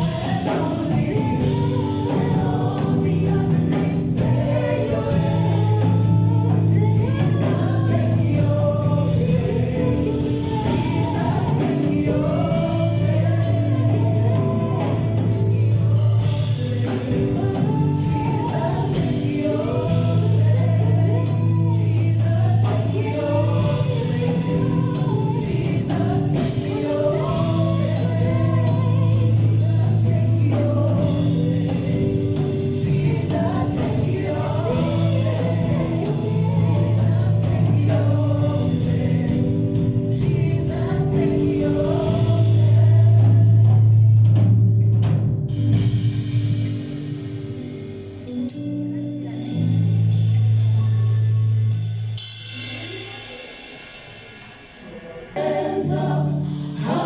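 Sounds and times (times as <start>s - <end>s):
group singing gospel: 0.0s - 44.2s, 54.7s - 57.0s
band with bass line: 0.0s - 57.0s.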